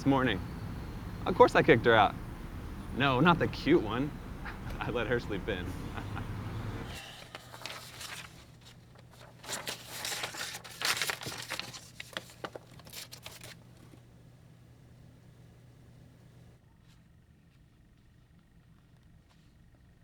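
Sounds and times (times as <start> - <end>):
steady low hum: 0.0 - 12.6
rustling and crinkling handling noise: 6.9 - 14.1.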